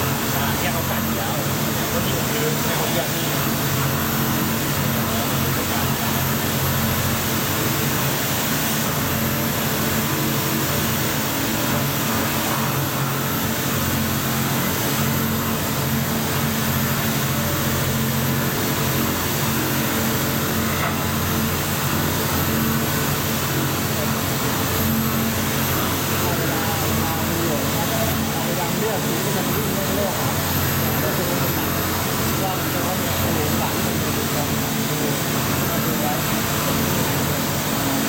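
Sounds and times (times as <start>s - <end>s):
milling machine cutting steel: 0.0s - 38.0s.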